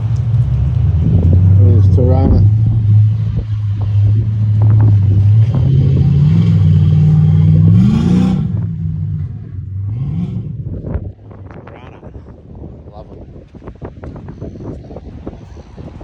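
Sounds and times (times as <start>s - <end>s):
vehicle engine accelerating: 0.0s - 11.7s.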